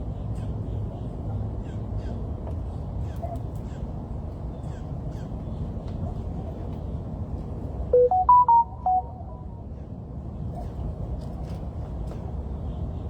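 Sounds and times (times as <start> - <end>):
electronic beeping jingle: 8.0 - 9.5.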